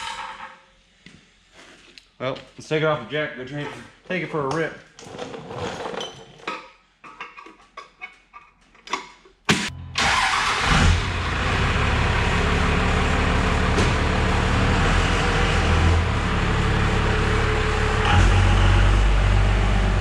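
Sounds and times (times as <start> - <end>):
diesel engine starting and idling: 9.7 - 20.0.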